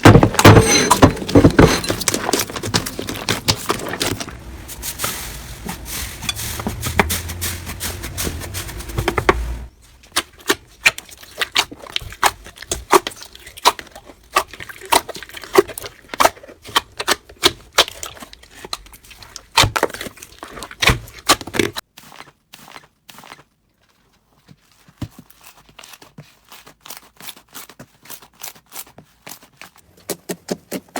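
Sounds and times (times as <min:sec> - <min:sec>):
slime squishing: 0:01.3 - 0:23.6.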